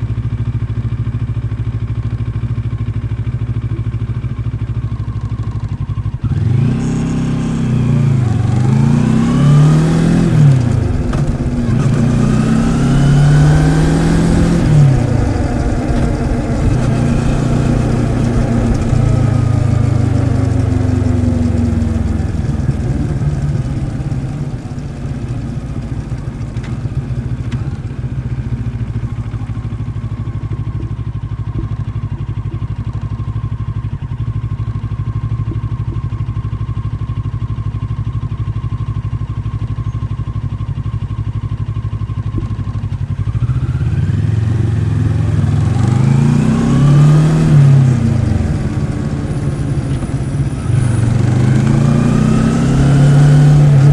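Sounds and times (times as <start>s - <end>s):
motorcycle engine revving and idling: 0.0s - 53.9s.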